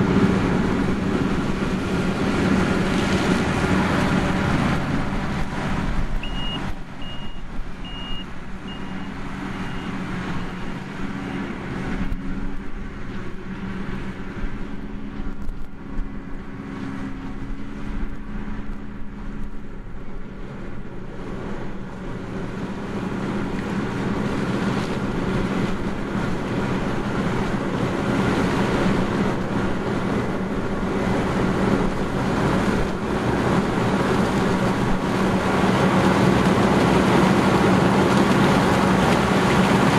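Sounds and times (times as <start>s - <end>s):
heavy machinery engines running: 0.0s - 39.9s
high electronic warning beep: 6.2s - 10.7s.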